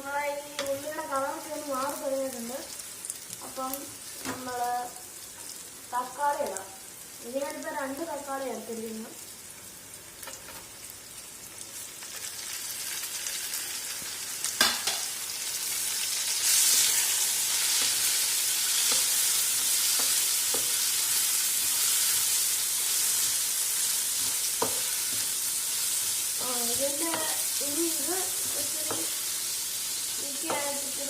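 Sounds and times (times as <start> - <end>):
onions sizzling in hot oil: 0.0 - 31.0
spoon tapping a pan: 14.6 - 15.1, 24.2 - 25.2, 30.4 - 30.8.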